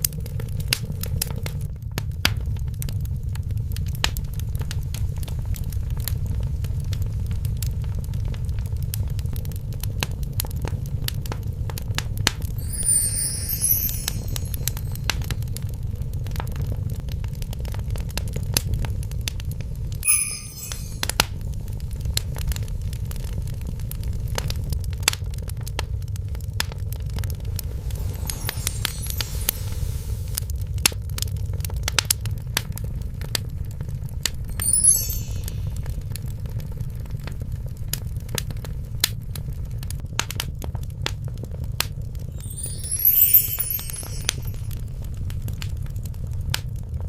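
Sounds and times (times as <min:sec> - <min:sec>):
fire crackling and popping: 0:00.0 - 0:47.0
high shimmering sound: 0:12.6 - 0:15.4, 0:20.0 - 0:21.3, 0:27.5 - 0:30.4, 0:34.5 - 0:36.1, 0:42.4 - 0:44.8.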